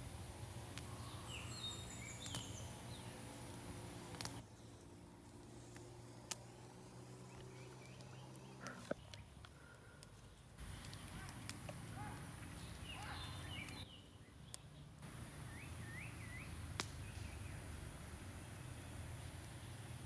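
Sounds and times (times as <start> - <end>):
bird chirping whistles: 0.9 - 3.2, 15.5 - 17.6.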